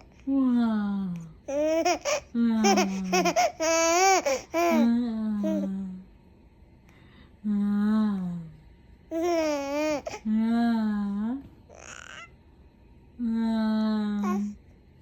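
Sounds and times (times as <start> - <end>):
person babbling and laughing: 1.8 - 5.7.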